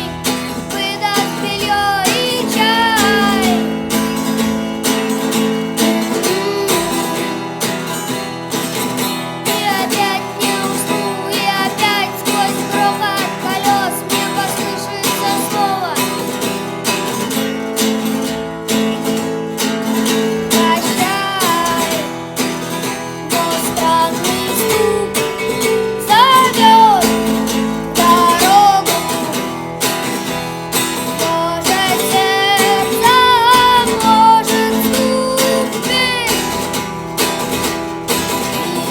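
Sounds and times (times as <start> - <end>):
acoustic guitar strumming: 0.0 - 38.9
wavering melody line: 23.7 - 30.0.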